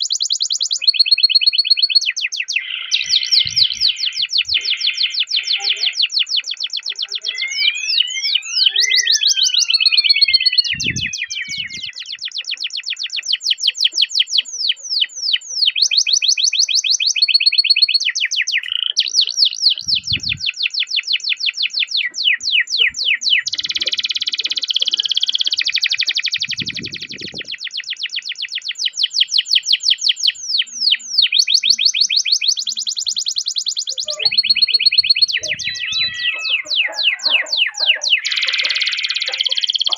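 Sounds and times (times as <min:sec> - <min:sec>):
canary singing trills: 0:00.0 - 0:39.9.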